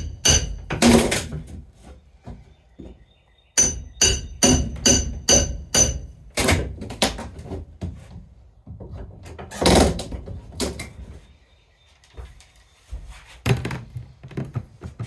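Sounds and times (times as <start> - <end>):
hammer striking metal: 0.0 - 1.0, 3.6 - 6.2.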